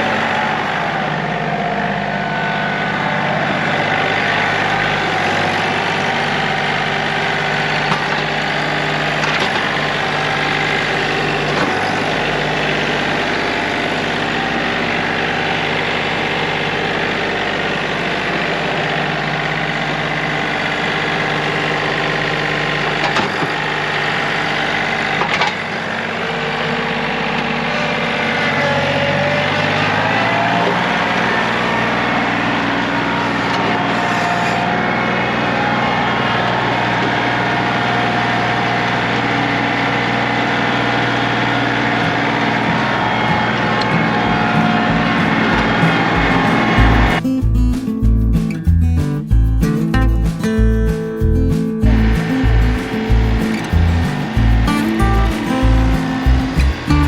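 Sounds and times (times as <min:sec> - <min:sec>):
vehicle engine running: 0:00.0 - 0:57.0.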